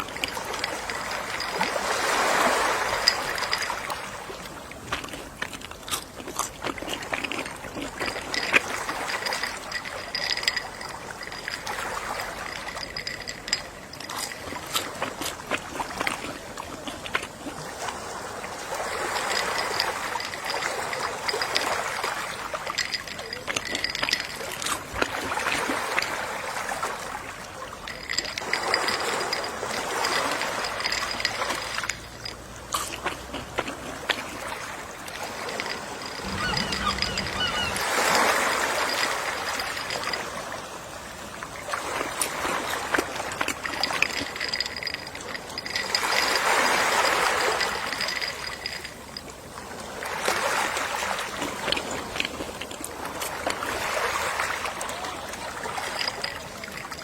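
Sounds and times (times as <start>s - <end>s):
sea waves washing in: 0.0s - 4.4s, 34.4s - 41.0s.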